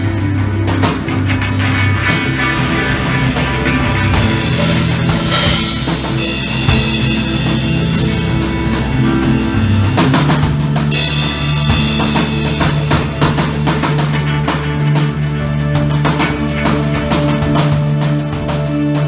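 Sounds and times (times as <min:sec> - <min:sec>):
rock band playing live: 0:00.0 - 0:19.0
drum kit hits: 0:00.7 - 0:09.1.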